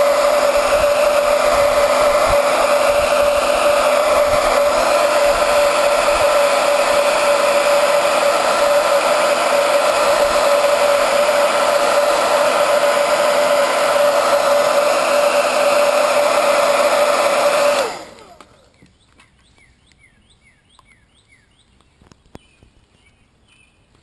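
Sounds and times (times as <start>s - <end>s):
blow dryer running: 0.0s - 18.7s.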